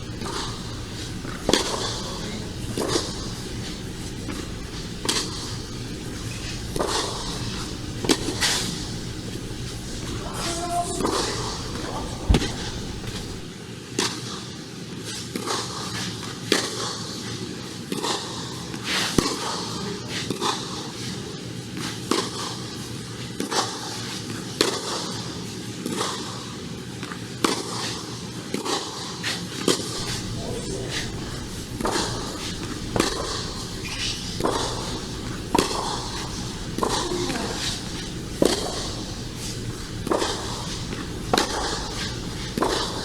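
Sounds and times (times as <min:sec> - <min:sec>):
racquet hitting tennis ball: 0:00.0 - 0:13.5, 0:30.0 - 0:43.0
tennis ball bouncing: 0:00.0 - 0:13.5, 0:30.0 - 0:43.0.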